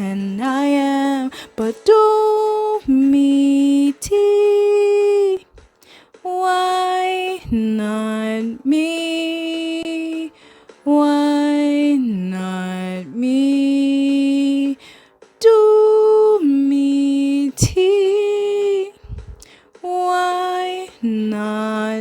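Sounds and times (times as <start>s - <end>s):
woman singing long held notes: 0.0s - 5.5s, 6.2s - 22.0s.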